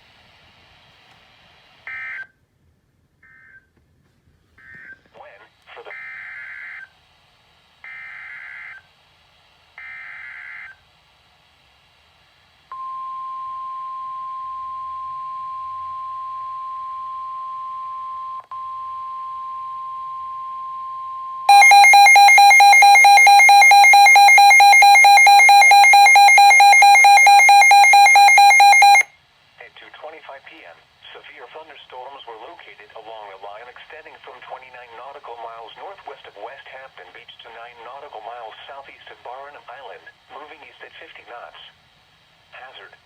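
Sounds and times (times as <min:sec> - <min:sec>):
steady warning alarm tone: 0:14.2 - 0:29.1
rapid multi-pitch alarm beeping: 0:21.5 - 0:29.1.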